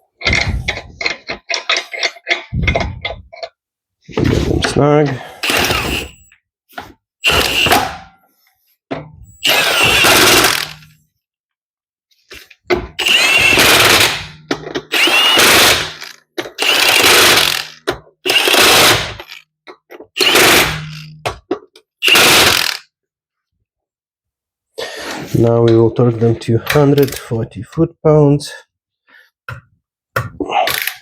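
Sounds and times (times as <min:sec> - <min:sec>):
impact wrench hammering: 0:07.3 - 0:08.1.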